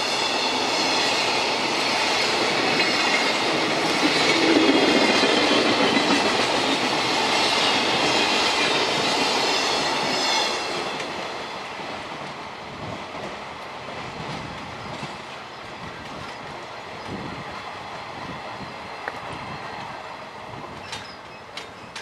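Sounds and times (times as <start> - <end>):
train wheels clattering on track: 0.0 - 22.0.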